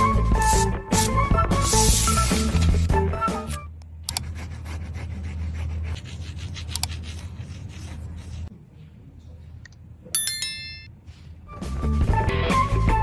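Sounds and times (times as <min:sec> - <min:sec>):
music: 0:00.0 - 0:03.8, 0:11.4 - 0:13.0
rubbing and handling noise: 0:04.1 - 0:09.0
bell-like ding: 0:10.2 - 0:11.0.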